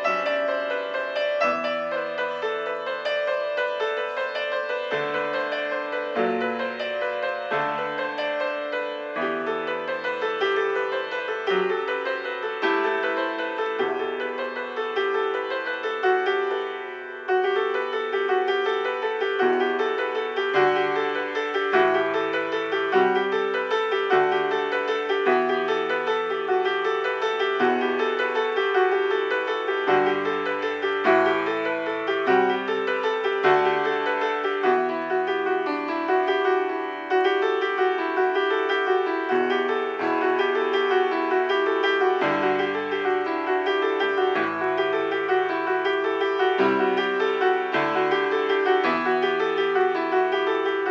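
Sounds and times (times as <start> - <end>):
piano bass line: 0.0 - 50.9
repeated piano notes: 0.0 - 50.9.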